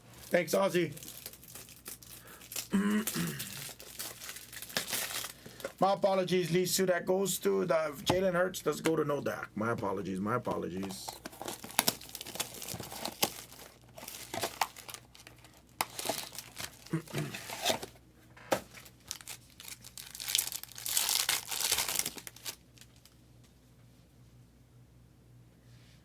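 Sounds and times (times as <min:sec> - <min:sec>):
wrappers crinkling and tearing: 0:00.0 - 0:05.9, 0:10.7 - 0:17.9, 0:18.6 - 0:23.2.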